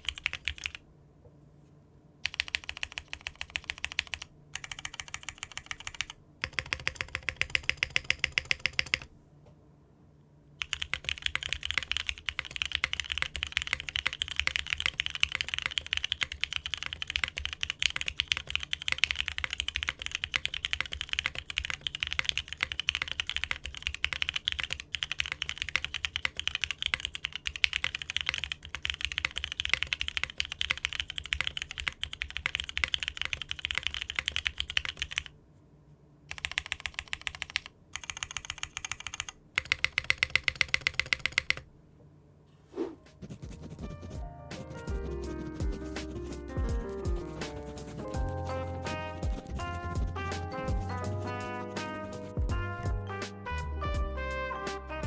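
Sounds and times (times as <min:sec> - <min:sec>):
mechanical keyboard typing: 0:00.0 - 0:00.8, 0:02.2 - 0:09.1, 0:10.6 - 0:35.3, 0:36.3 - 0:41.7.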